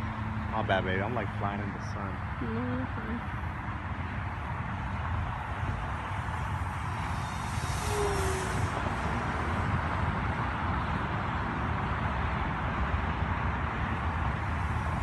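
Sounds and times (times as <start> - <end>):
wind rumbling on microphone: 0.0 - 15.0
model airplane motor whine: 7.1 - 9.4.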